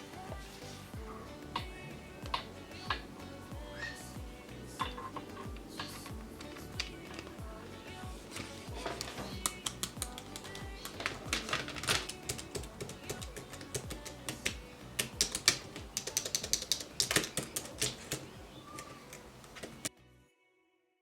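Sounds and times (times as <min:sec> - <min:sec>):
soft background music: 0:00.0 - 0:20.8.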